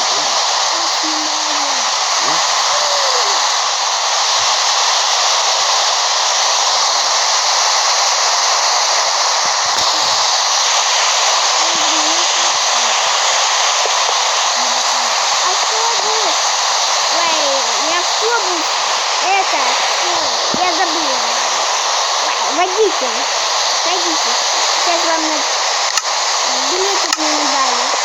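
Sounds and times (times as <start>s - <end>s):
faint high-pitched voices: 0.0s - 3.6s, 11.5s - 13.1s, 13.8s - 16.4s
loud steady rushing hiss: 0.0s - 28.0s.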